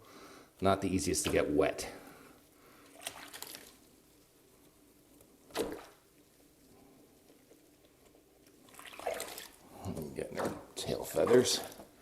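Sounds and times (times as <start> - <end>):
water splash: 2.9 - 3.8, 5.5 - 6.0, 8.7 - 9.6.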